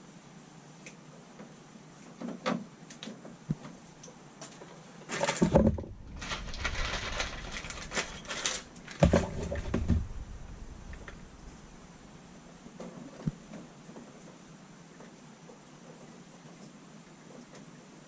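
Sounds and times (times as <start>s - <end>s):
rustling with knocks and bumps: 4.5s - 14.4s.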